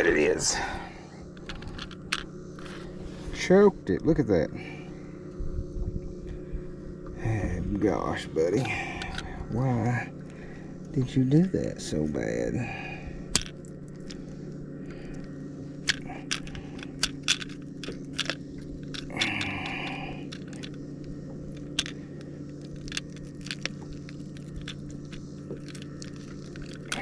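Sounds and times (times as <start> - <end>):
fishing hooks clicking and scraping: 0.0 - 3.4, 8.0 - 10.6, 12.5 - 27.0
steady low hum: 0.0 - 27.0.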